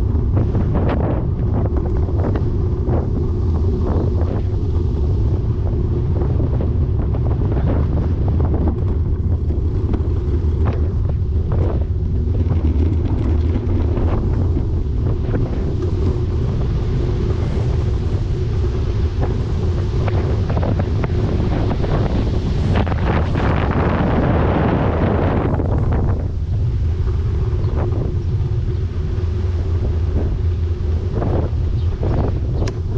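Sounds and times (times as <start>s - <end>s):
wind buffeting microphone: 0.0s - 32.9s.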